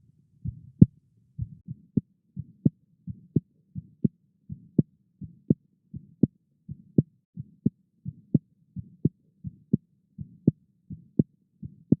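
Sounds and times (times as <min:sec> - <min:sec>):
heartbeat through stethoscope: 0:00.4 - 0:01.8, 0:02.4 - 0:12.0.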